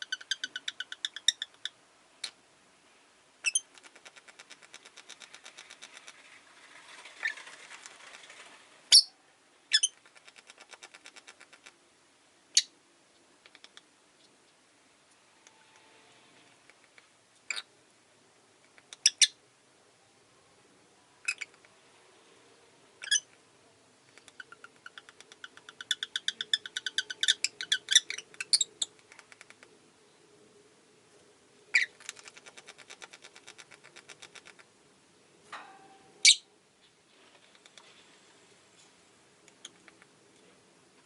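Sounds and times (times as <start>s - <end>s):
lovebirds shrill calls: 3.4s - 3.7s, 8.9s - 9.1s, 9.7s - 10.0s, 23.0s - 23.3s, 24.3s - 28.9s, 31.7s - 32.0s, 36.2s - 36.4s
lovebirds chattering chirps: 9.7s - 11.6s, 21.2s - 21.6s, 24.1s - 29.1s, 31.7s - 34.5s.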